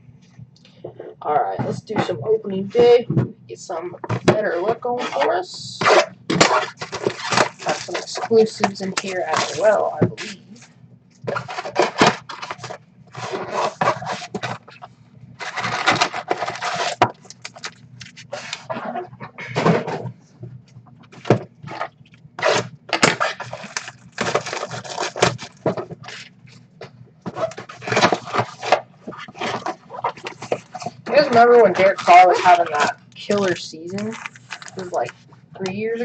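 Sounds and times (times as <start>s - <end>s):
foil wrappers crinkling and tearing: 5.9s - 9.8s, 11.3s - 18.8s, 21.7s - 26.3s, 27.4s - 35.2s.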